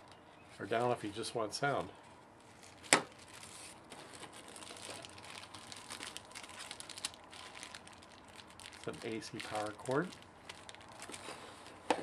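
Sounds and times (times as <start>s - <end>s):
packaging crinkling and rustling: 2.4s - 12.0s.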